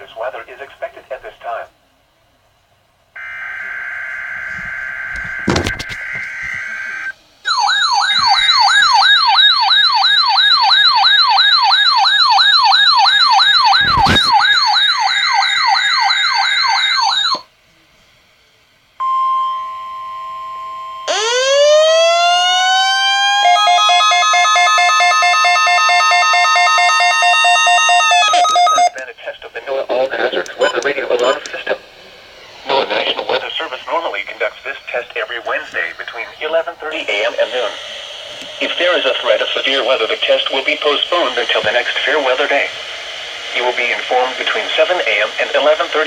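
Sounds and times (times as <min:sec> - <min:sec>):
pulsing tone: 0:03.2 - 0:09.0
rising siren tone: 0:03.2 - 0:17.4, 0:19.0 - 0:28.9
warbling electronic siren tone: 0:03.2 - 0:17.4, 0:19.1 - 0:29.0
steady single tone: 0:19.0 - 0:21.2.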